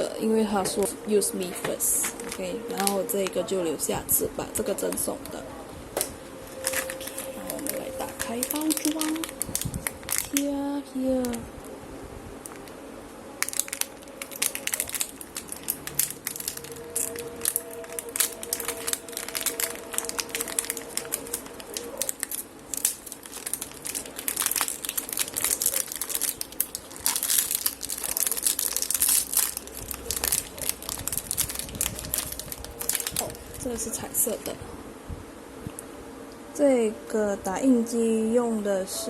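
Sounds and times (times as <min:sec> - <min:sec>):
packaging crinkling and tearing: 0:00.8 - 0:03.5, 0:06.0 - 0:10.6, 0:13.4 - 0:34.4.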